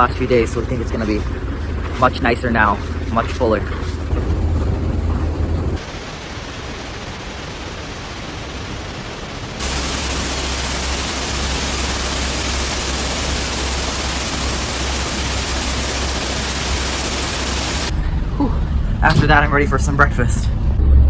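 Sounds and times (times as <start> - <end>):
waterfall roaring: 0.0 - 20.4.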